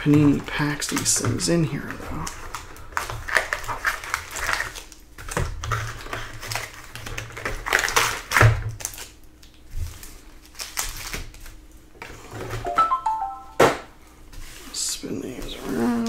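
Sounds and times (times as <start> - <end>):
foil packs crinkling: 0.0 - 11.9.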